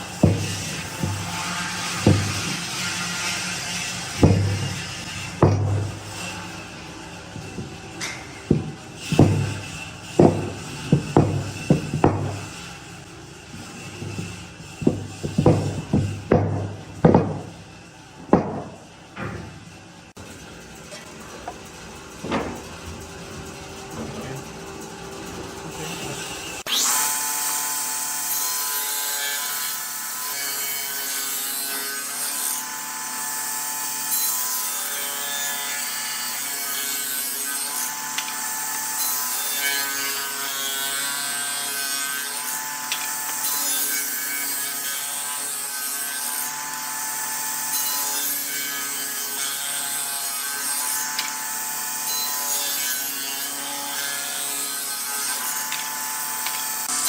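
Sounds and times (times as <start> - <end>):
lathe tool rasping wood: 0.0 - 16.4.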